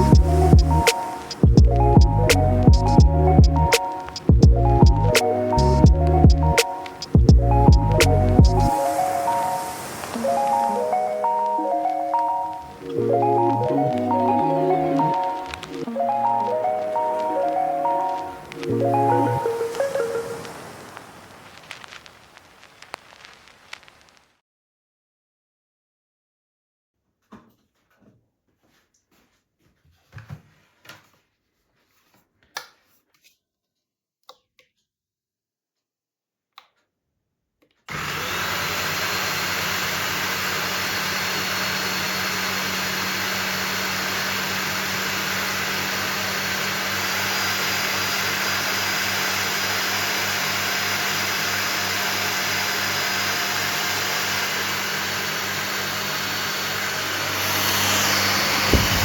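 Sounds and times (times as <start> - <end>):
handheld vacuum cleaner running: 0.0 - 1.6, 8.7 - 11.4, 12.6 - 21.1, 37.9 - 59.0.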